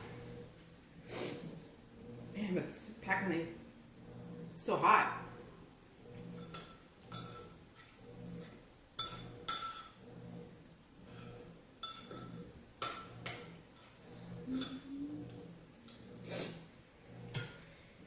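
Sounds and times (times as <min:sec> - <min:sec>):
spoon clinking against bowl: 0:11.8 - 0:13.1.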